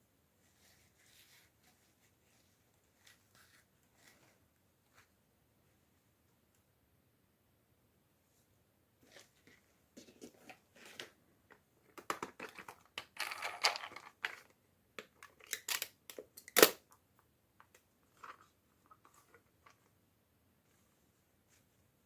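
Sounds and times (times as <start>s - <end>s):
sharp plastic snap: 15.5s - 16.8s.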